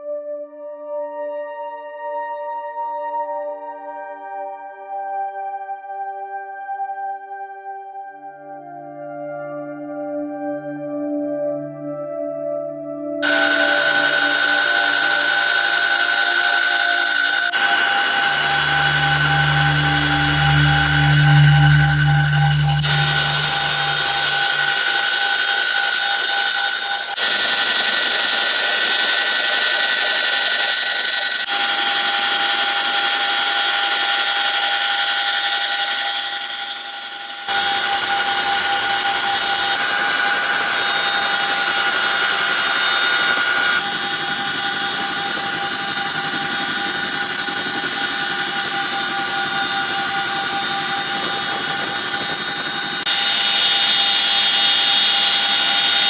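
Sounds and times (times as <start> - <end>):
helicopter turbine whine: 13.2 - 56.0.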